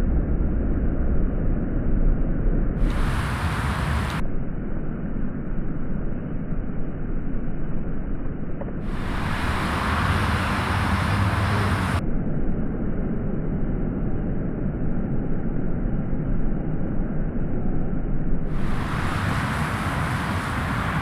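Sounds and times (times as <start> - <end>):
wind on the microphone: 0.0 - 4.2, 8.8 - 12.0, 18.4 - 21.0
low rushing and rumbling: 0.0 - 4.7, 8.8 - 21.0
bright hiss: 2.8 - 4.2, 8.9 - 12.0, 18.5 - 21.0.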